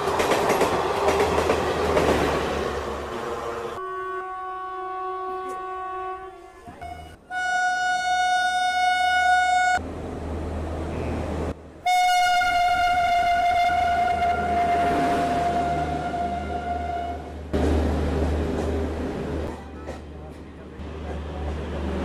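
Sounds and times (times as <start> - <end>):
rushing train noise: 0.0 - 3.9, 9.3 - 22.0
locomotive horn blasts: 3.7 - 9.8, 11.8 - 17.3.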